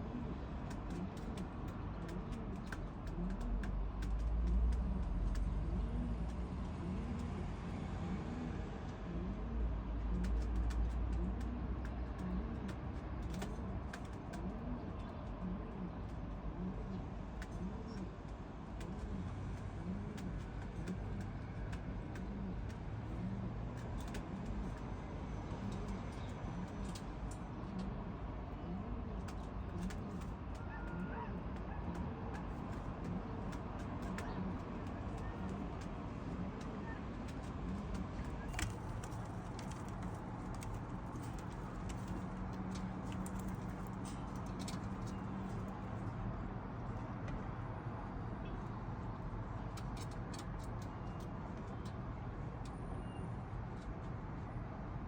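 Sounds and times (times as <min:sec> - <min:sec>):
pigeons cooing: 0:27.6 - 0:45.4.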